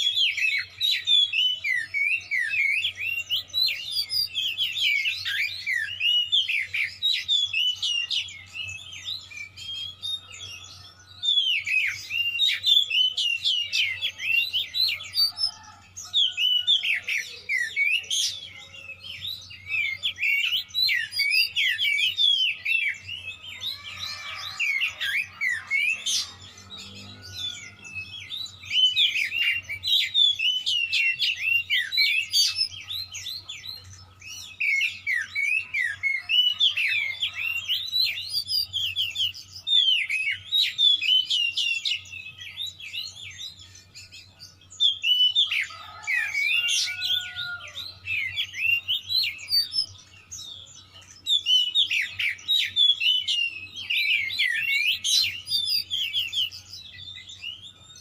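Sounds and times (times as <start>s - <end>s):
songbird singing sharp phrases: 0.0s - 58.0s.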